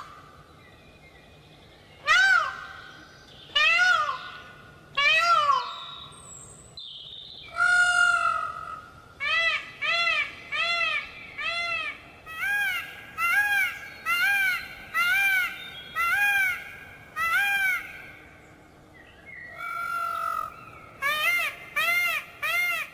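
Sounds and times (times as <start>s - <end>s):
peafowl calling: 7.5s - 18.2s, 19.5s - 22.9s.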